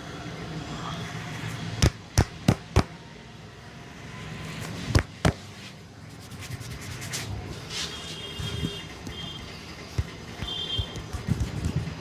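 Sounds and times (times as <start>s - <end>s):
hands rubbing skin: 5.6s - 8.0s.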